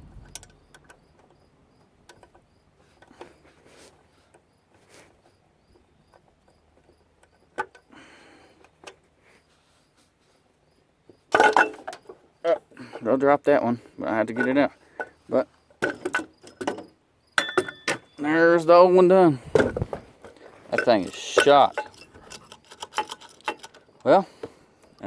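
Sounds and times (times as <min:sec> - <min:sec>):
hand tools clicking: 0:20.7 - 0:25.0.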